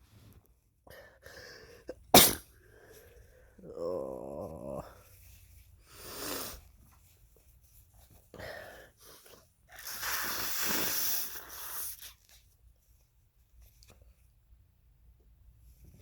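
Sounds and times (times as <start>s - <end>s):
man sneezing: 2.1s - 2.4s.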